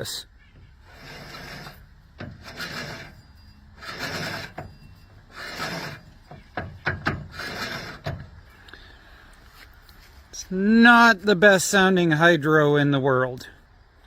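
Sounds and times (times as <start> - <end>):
transmission rasping grind: 0.0 - 12.4.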